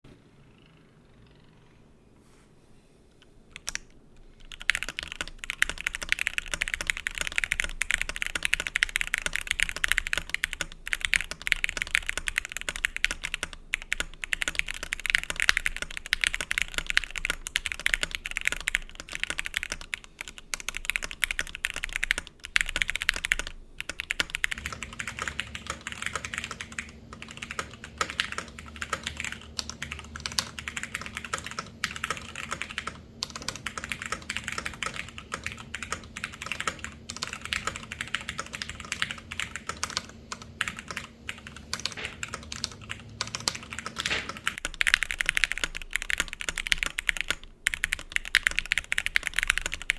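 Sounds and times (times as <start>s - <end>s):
fast mechanical keyboard typing: 3.6s - 49.9s.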